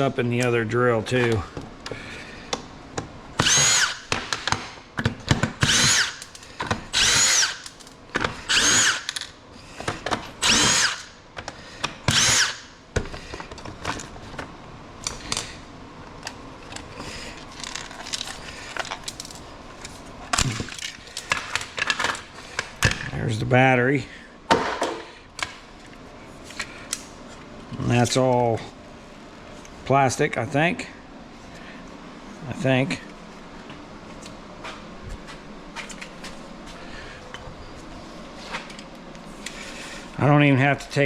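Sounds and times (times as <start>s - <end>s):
parts clicking and rattling: 1.1s - 23.2s
power drill spinning: 3.4s - 4.2s, 5.6s - 9.3s, 10.4s - 11.2s, 12.1s - 12.8s.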